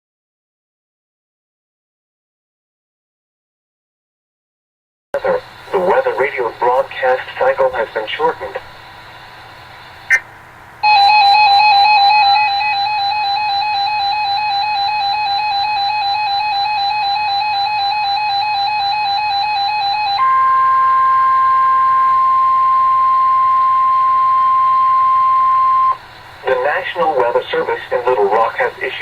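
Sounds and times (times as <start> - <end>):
pure steady warning tone: 5.2 - 29.0
loud electronic alert tone: 10.8 - 26.7
radio click: 27.1 - 27.5, 28.2 - 28.6.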